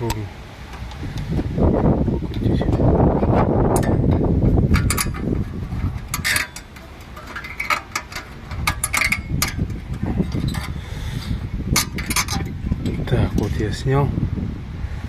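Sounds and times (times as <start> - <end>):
pliers clicking on metal spring: 6.0 - 10.7.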